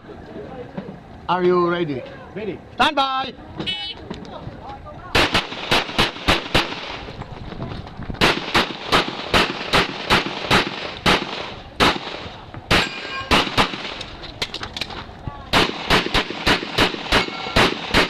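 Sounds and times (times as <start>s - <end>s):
rapid gunshots: 5.1s - 7.1s, 8.2s - 14.0s, 15.5s - 18.0s.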